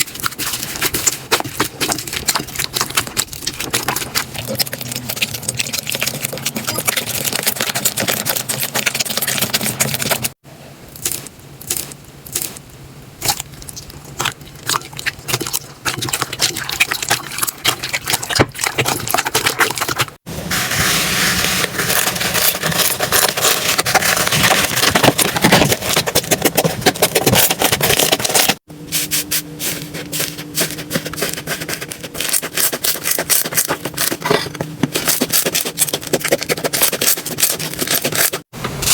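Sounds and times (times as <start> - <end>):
slime squishing and crackling: 0.0 - 10.4, 13.2 - 20.2, 20.8 - 38.9.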